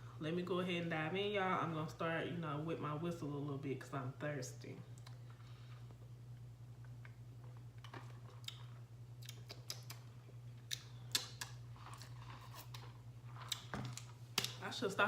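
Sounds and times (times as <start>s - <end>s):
steady low hum: 0.0s - 15.0s
soft mouth clicks: 9.2s - 11.6s.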